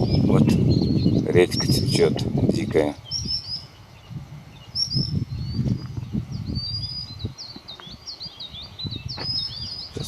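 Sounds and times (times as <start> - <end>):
songbirds chirping and singing: 0.0 - 10.0
wind gusts rumble: 0.0 - 10.0.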